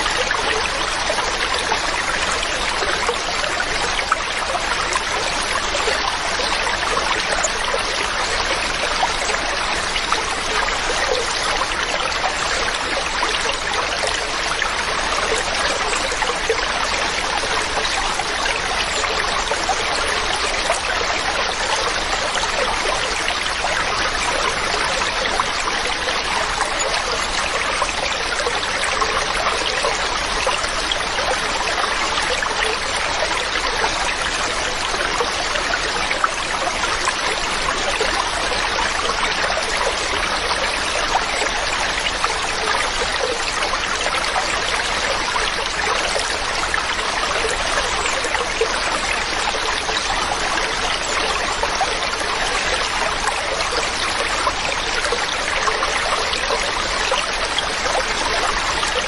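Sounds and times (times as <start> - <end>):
stream running over rocks: 0.0 - 59.0.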